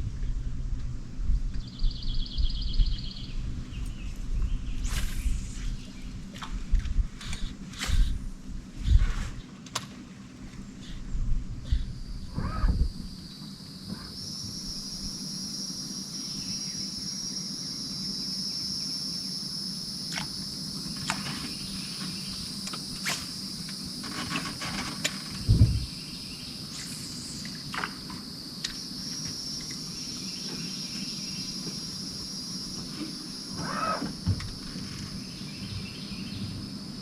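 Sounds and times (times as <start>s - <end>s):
high-pitched insect chorus: 0.5s - 9.5s, 10.5s - 37.0s
loud low thump: 25.4s - 25.9s.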